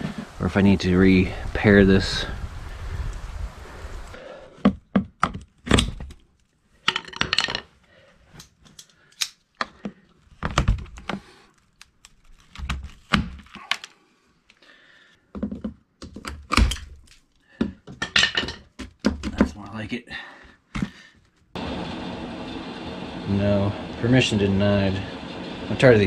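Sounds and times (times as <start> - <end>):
clicks and knocks of handling: 15.3 - 19.8.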